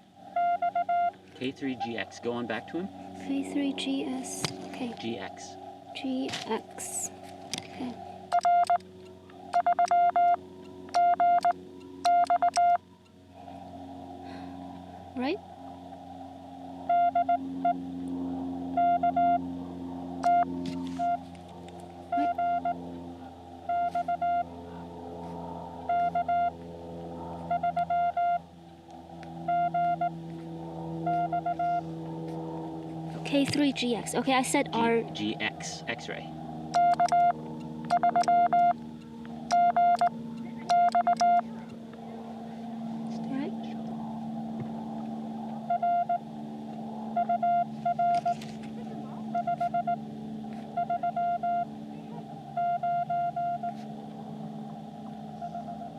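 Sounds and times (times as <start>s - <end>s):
faint steady hum: 0.0s - 55.9s
morse code tones: 0.3s - 1.2s, 8.3s - 8.8s, 9.5s - 12.8s, 16.9s - 17.8s, 18.7s - 19.5s, 20.2s - 21.3s, 22.1s - 23.0s, 23.6s - 24.5s, 25.8s - 26.6s, 27.4s - 28.4s, 29.4s - 30.2s, 31.0s - 31.8s, 36.7s - 38.8s, 39.4s - 41.6s, 45.6s - 46.2s, 47.2s - 48.5s, 49.2s - 51.7s, 52.4s - 53.8s, 55.3s - 55.9s.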